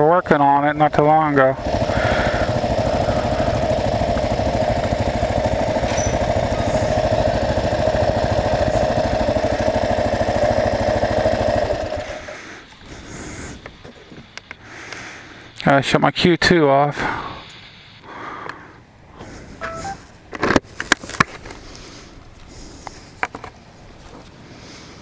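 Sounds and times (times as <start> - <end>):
motorcycle engine running: 0.5 - 14.0, 19.6 - 20.2.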